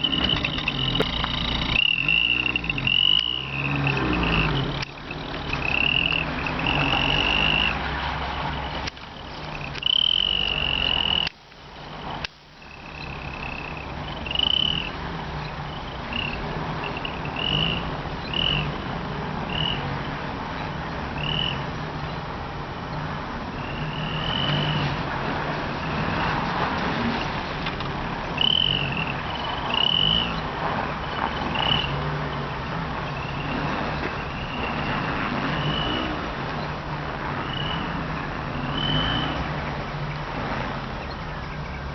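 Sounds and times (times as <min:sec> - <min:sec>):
exhaust whistle toots: 0:00.0 - 0:04.8, 0:05.4 - 0:07.9, 0:09.6 - 0:11.3, 0:21.2 - 0:21.6, 0:23.5 - 0:25.0, 0:28.4 - 0:30.4, 0:33.0 - 0:36.3, 0:37.3 - 0:39.5
car engine and road noise: 0:00.0 - 0:41.9.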